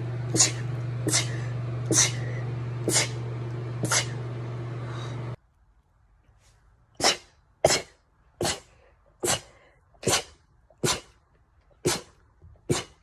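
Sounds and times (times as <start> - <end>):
woman sneezing: 0.4 - 2.3, 2.9 - 3.2, 3.8 - 4.2, 7.0 - 11.2, 12.7 - 13.0.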